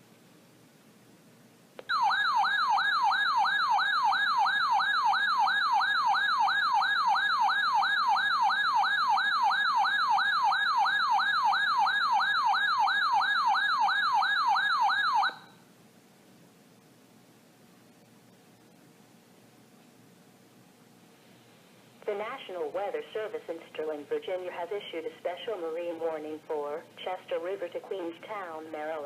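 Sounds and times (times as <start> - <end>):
electronic siren-like alert tone: 1.9 - 15.5.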